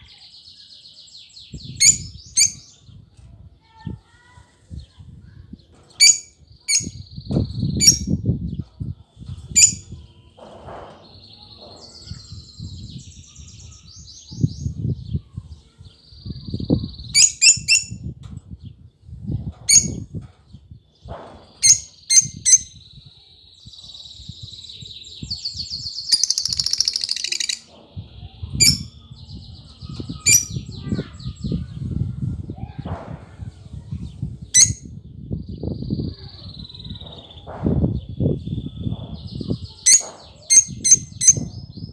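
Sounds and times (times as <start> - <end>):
lovebirds chirping: 0.0 - 2.8, 21.0 - 32.1
buzzy high chattering: 26.1 - 27.6.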